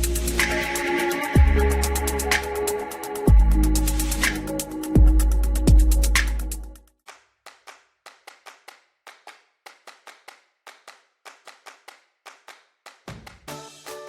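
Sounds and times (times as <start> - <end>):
electronic music: 0.0 - 6.8, 13.5 - 14.0.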